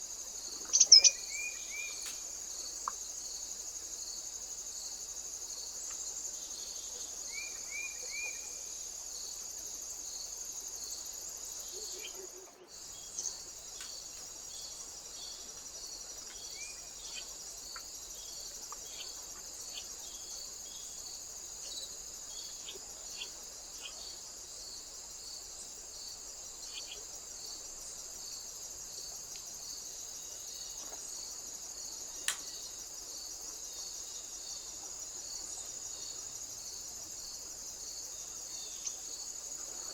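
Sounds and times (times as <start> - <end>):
insects trilling: 0.0 - 39.9
faint bird chirps: 0.7 - 2.1, 7.3 - 8.6, 11.6 - 13.4.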